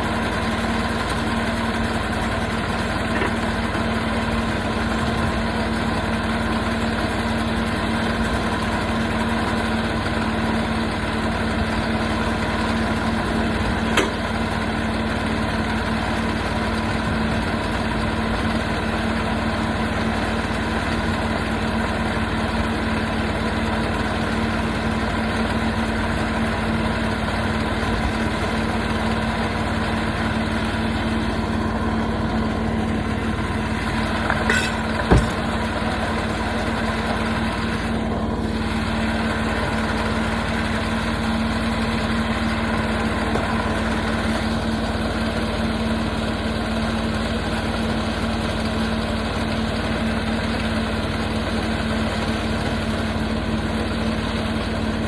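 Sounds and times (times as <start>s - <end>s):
sawmill engine running: 0.0s - 55.0s
sharp knock: 34.4s - 35.5s.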